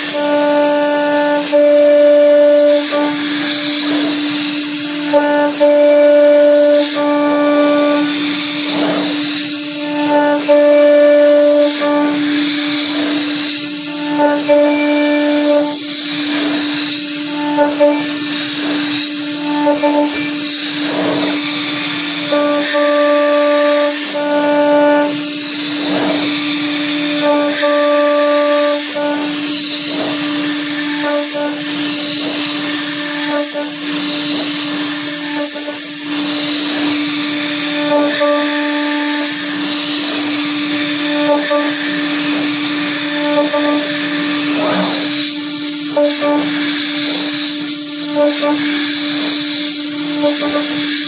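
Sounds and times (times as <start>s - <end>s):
coolant air hiss: 0.0s - 51.0s
cutter whine: 0.0s - 51.0s.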